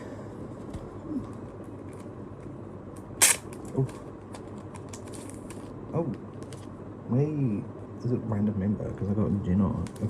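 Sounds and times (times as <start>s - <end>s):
sharp snap: 3.2s - 3.5s.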